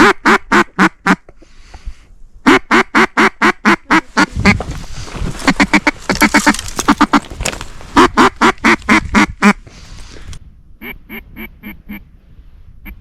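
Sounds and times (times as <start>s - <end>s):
ducks quacking: 2.5s - 9.6s
low rustling rumble: 4.0s - 11.4s.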